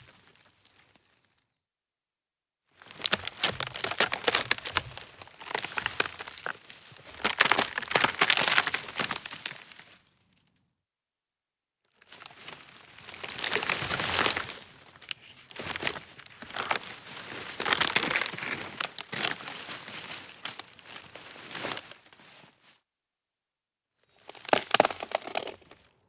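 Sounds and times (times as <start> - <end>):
sticks snapping and cracking: 2.9 - 9.8, 13.1 - 16.8, 17.6 - 19.5, 24.3 - 25.8.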